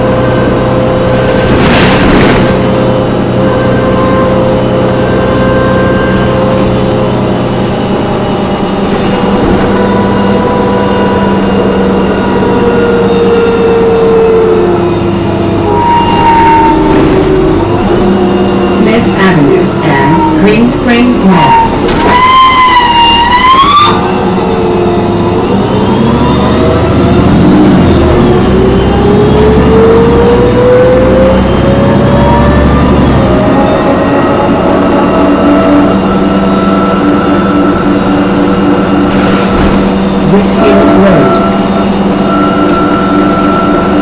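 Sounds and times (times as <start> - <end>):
bus diesel engine running: 0.0 - 22.7, 23.4 - 44.0
whining tones: 0.0 - 44.0
high-pitched brake screech: 15.6 - 17.5, 21.2 - 24.1, 37.0 - 44.0.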